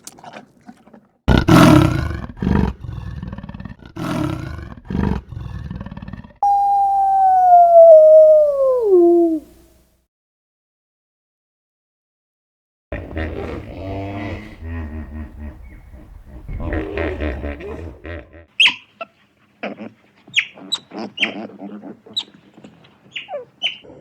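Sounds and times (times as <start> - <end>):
high-pitched animal call: 6.4 - 9.6.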